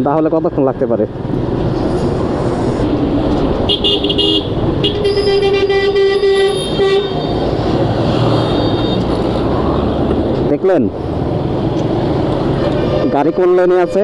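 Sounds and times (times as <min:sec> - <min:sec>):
traffic and engine noise: 0:00.0 - 0:14.0
vehicle horn honking: 0:03.7 - 0:07.4, 0:12.6 - 0:14.0.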